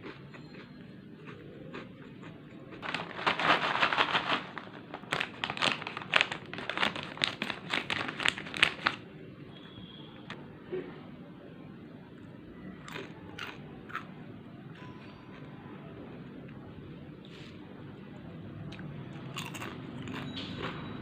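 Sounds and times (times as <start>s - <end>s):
chip packet crinkling: 2.7s - 9.0s.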